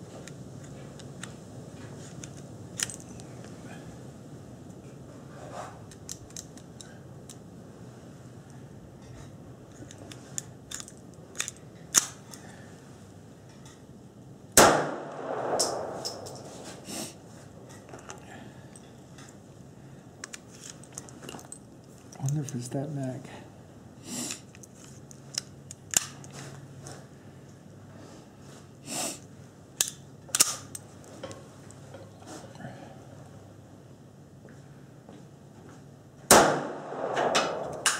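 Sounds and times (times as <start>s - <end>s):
pistol metallic clicks: 10.4s - 12.3s, 14.6s - 16.5s, 25.3s - 26.3s, 29.8s - 30.8s, 36.3s - 37.9s
loud pistol shot: 14.6s - 16.3s, 36.3s - 37.9s
breathy rush of noise: 14.9s - 17.6s.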